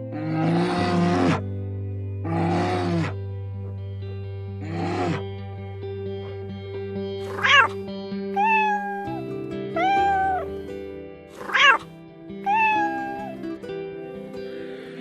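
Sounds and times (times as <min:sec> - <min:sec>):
background music: 0:00.0 - 0:15.0
cat meowing: 0:07.2 - 0:07.8, 0:08.4 - 0:09.2, 0:09.8 - 0:10.6, 0:11.4 - 0:13.4.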